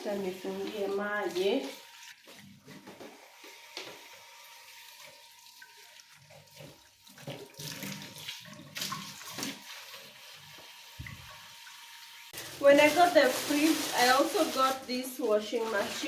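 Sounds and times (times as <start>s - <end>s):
tap water splashing into sink: 4.7s - 11.8s.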